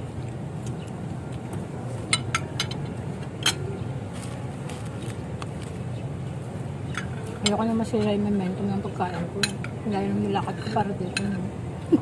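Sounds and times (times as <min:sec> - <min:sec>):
low background hum: 0:00.0 - 0:12.0
cutlery clinking against a plate: 0:02.1 - 0:03.6.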